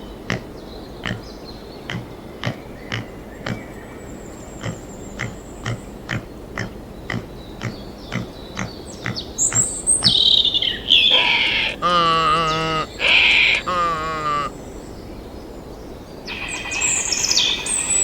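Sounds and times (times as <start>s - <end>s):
pigs squealing: 11.0s - 14.5s.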